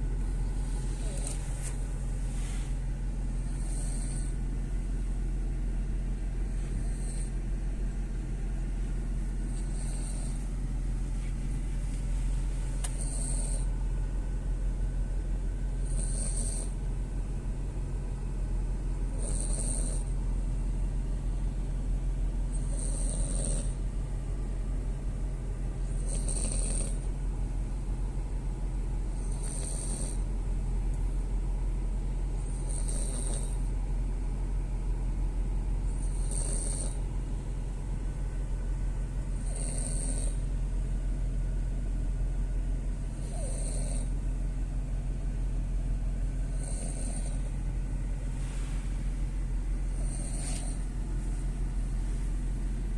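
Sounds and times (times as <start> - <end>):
car rumble: 0.0 - 15.8
dog snoring: 0.5 - 4.5, 6.4 - 7.4, 9.4 - 10.5, 12.7 - 13.8, 15.7 - 16.8, 19.0 - 20.2, 22.5 - 23.9, 25.8 - 27.1, 29.1 - 30.3, 32.3 - 33.8, 35.8 - 37.1, 39.2 - 40.6, 43.1 - 44.2, 46.4 - 47.7, 49.8 - 51.4.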